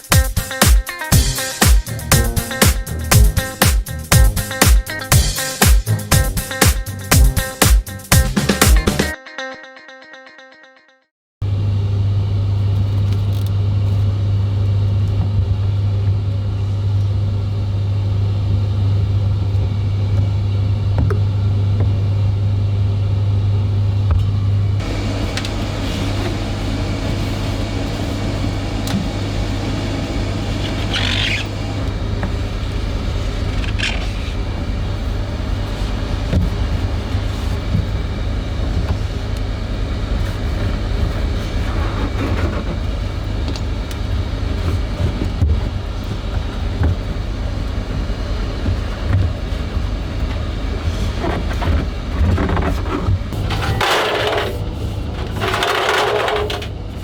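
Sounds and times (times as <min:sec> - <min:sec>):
laundry machine running: 0:11.4 - 0:57.0.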